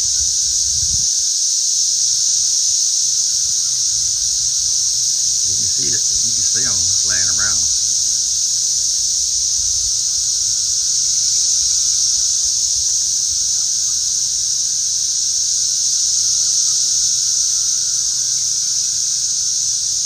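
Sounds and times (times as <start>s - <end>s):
cicadas droning: 0.0s - 20.0s.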